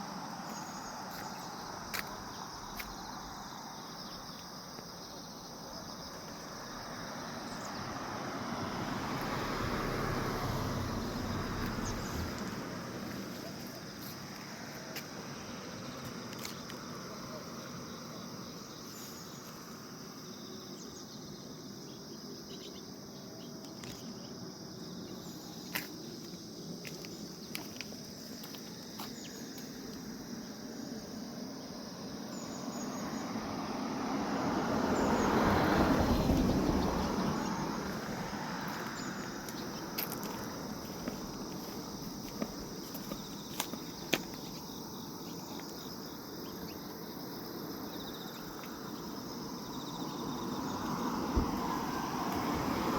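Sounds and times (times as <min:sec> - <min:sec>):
crickets chirring: 0:00.0 - 0:52.9
vehicle passing: 0:06.4 - 0:13.7, 0:32.5 - 0:42.8, 0:47.7 - 0:52.9.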